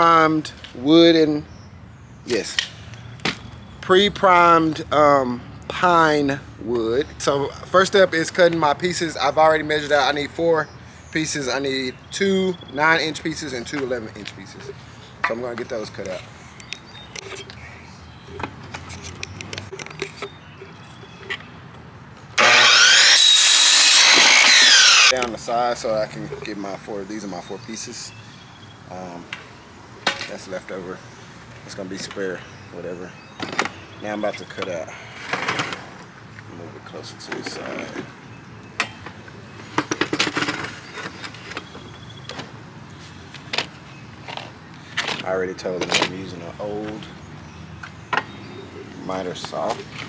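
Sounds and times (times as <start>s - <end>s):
electric miter saw cutting wood: 22.4s - 25.1s.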